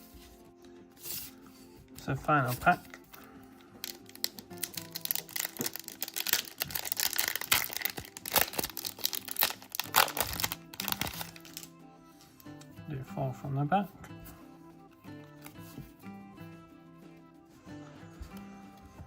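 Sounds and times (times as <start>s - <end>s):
background music: 0.0s - 19.0s
foil wrapper tearing and crinkling: 3.8s - 11.7s.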